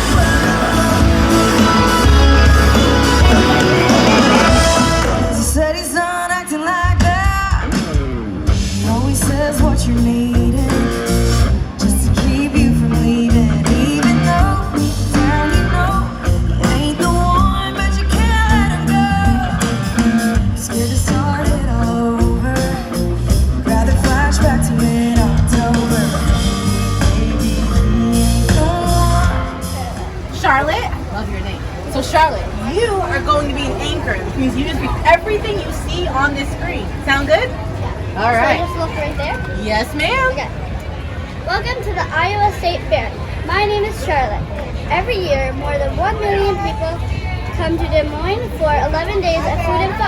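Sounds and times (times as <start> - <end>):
steady bass: 0.0 - 6.0, 6.9 - 30.7
pop-rock song with vocals: 0.0 - 30.3.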